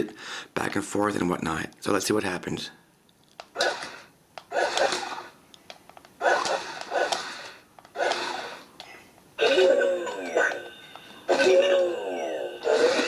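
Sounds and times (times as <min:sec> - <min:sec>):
toy robot electronic sounds: 0:11.4 - 0:13.0.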